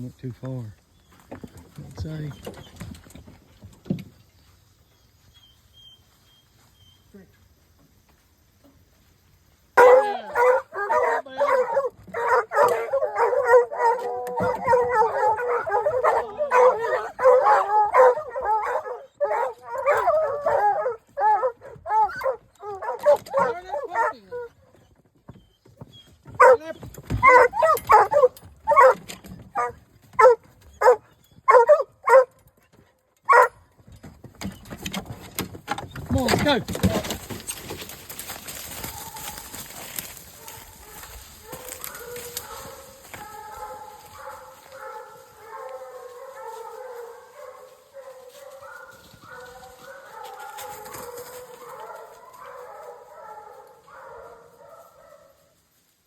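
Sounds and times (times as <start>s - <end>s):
dog barking: 9.8s - 24.5s, 26.4s - 29.0s, 29.6s - 32.3s, 33.3s - 33.6s, 40.4s - 55.6s
hounds baying: 9.8s - 32.4s, 33.2s - 33.6s, 38.2s - 55.6s.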